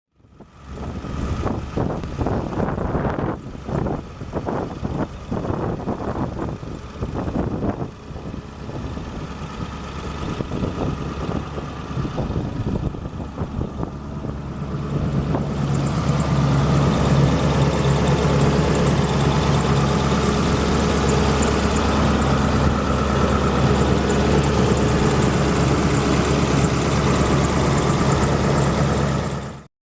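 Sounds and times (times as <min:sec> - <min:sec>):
pickup truck engine idling: 0:00.4 - 0:29.7.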